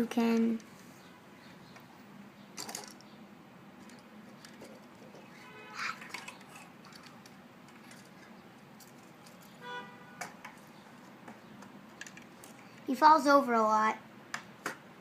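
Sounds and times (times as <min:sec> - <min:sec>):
plastic pieces clicking and rattling: 0:02.6 - 0:03.1, 0:03.8 - 0:05.2, 0:05.9 - 0:09.6, 0:11.6 - 0:12.6.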